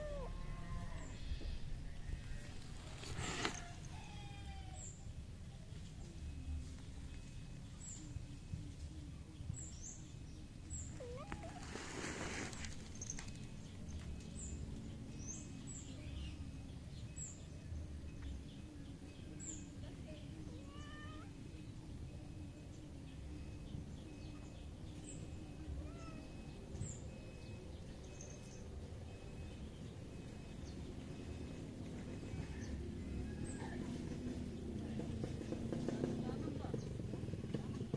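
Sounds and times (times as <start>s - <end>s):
steady low rumble: 0.0s - 4.0s.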